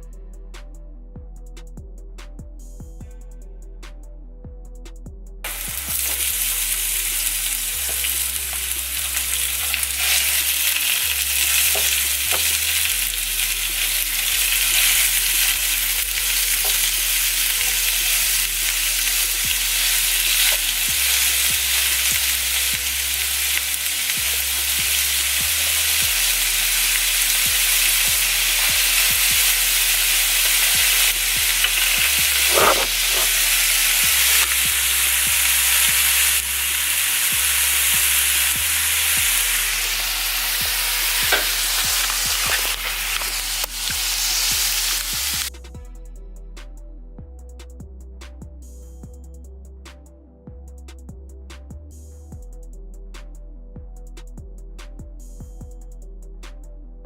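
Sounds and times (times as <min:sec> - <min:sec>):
onions and meat sizzling in a pan: 0:05.5 - 0:45.5
utensil stirring clicks: 0:27.0 - 0:35.5.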